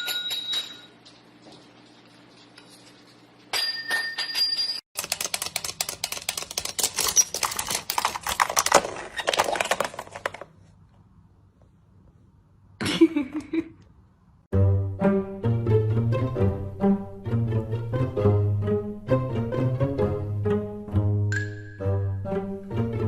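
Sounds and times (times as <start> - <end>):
fast clattering clicks: 5.0 - 10.5.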